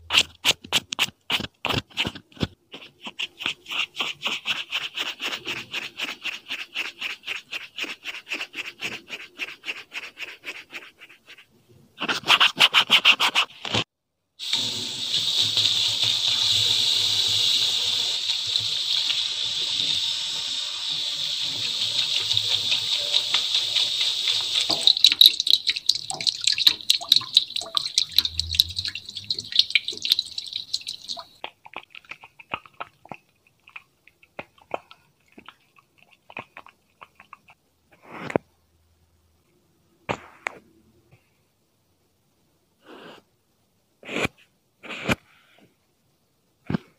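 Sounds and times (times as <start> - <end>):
water running: 14.4 - 37.5
water dripping: 14.4 - 37.6.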